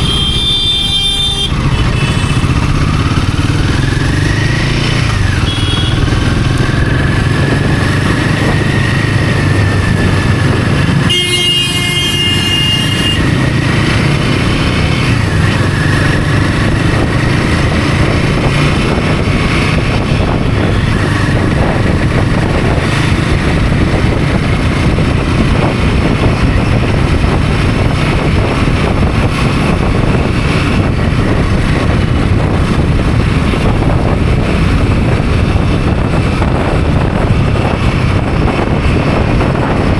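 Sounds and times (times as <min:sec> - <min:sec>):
vehicle horn: 0:00.0 - 0:02.4, 0:05.2 - 0:06.2, 0:11.0 - 0:13.5
motorcycle engine running: 0:00.0 - 0:39.9
road and wind noise: 0:00.0 - 0:39.9.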